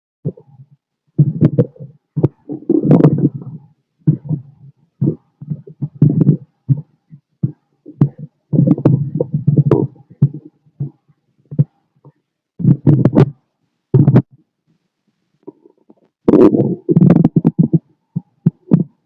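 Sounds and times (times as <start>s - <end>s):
bowel gurgling through stethoscope: 1.2s - 6.4s, 8.0s - 10.5s, 16.3s - 17.8s.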